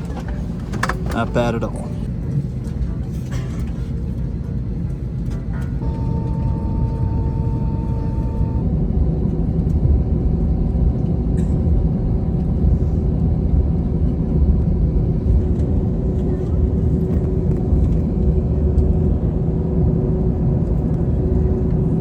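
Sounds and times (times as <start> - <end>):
airliner cabin rumble: 0.0 - 22.0
low steady hum: 0.0 - 22.0
high steady tone: 5.8 - 8.7.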